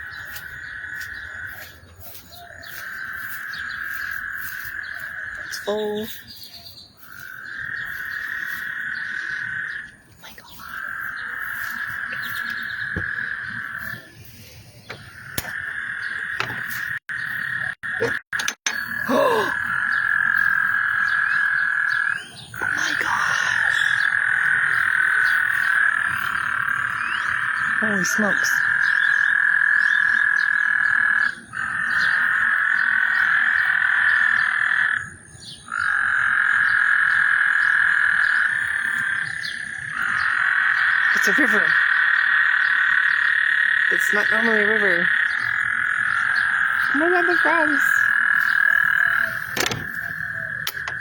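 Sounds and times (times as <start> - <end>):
frogs trilling: 0.0 - 51.0
sharp clicks: 49.5 - 51.0.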